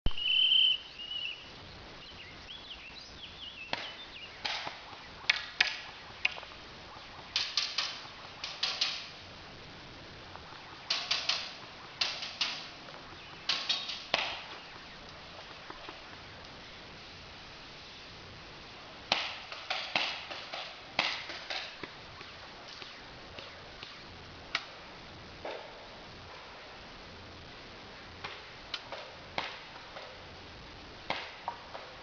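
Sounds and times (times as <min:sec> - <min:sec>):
airsoft guns firing: 0:03.7 - 0:09.3, 0:10.4 - 0:16.2, 0:19.1 - 0:24.7.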